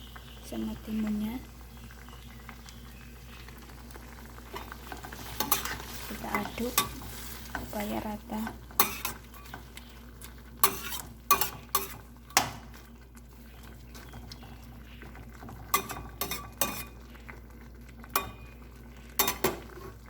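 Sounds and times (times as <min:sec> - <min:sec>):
soft sizzle: 0:00.0 - 0:20.0.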